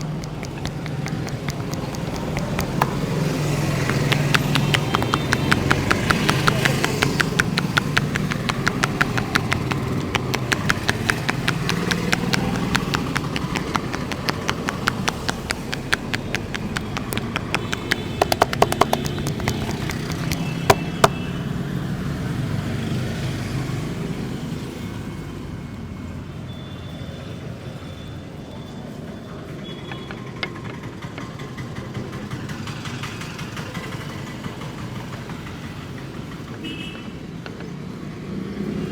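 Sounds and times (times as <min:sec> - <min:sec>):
hands tapping on a head: 0:00.0 - 0:21.3
sharp cracks: 0:00.0 - 0:21.3
street traffic hum: 0:00.0 - 0:38.9.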